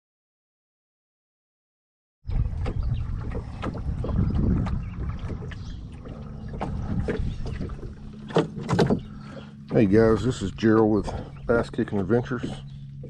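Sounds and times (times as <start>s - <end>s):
wind buffeting microphone: 2.3s - 13.0s
knocks and clicks: 6.5s - 9.1s.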